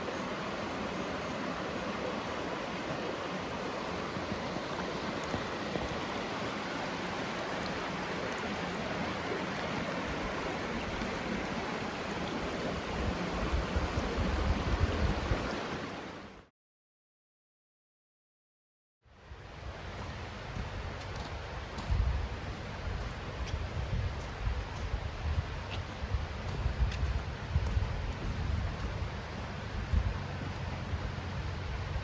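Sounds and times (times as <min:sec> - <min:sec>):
stream water rushing: 0:00.0 - 0:16.5, 0:19.2 - 0:32.0.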